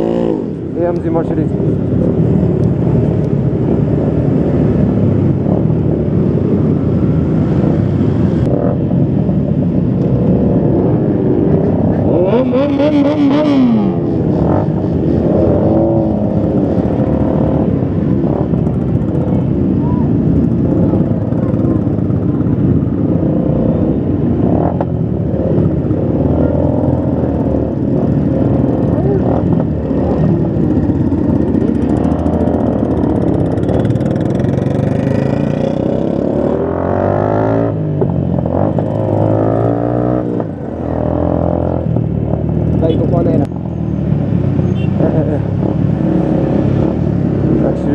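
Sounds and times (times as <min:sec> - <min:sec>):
motorcycle engines revving: 0:00.0 - 0:47.9
road noise: 0:00.0 - 0:47.9.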